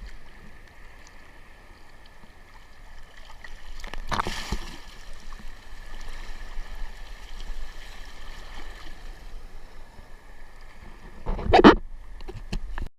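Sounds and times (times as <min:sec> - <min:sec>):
sea water rushing and sloshing: 0:00.0 - 0:12.8
water splash: 0:03.1 - 0:09.2.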